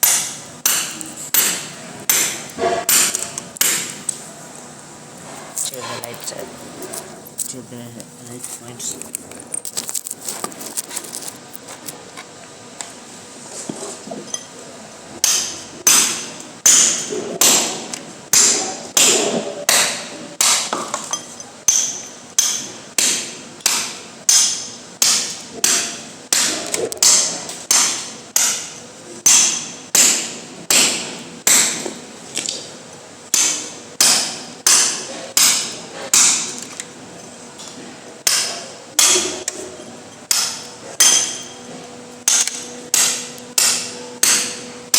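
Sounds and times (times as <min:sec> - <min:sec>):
hand tool striking rhythmically: 0:00.0 - 0:04.0, 0:42.3 - 0:44.7.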